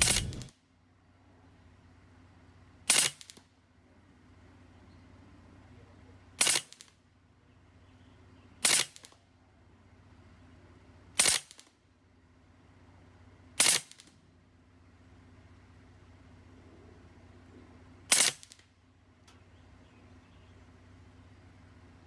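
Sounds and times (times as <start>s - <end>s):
air rifle shot crack: 0.0s - 0.5s, 8.6s - 9.2s, 18.1s - 18.6s.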